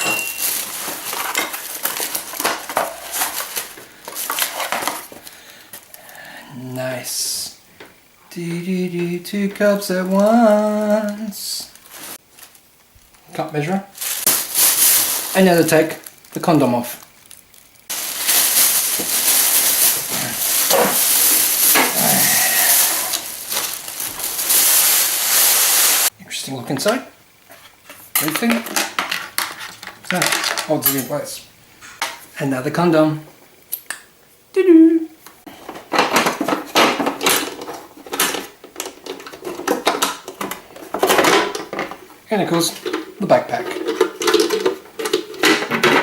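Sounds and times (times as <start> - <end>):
parts knocking and clattering: 0.0 - 5.2, 17.5 - 25.0, 27.5 - 31.1, 35.5 - 46.0
plastic bag crinkling: 0.0 - 5.9, 8.7 - 26.1, 35.9 - 46.0.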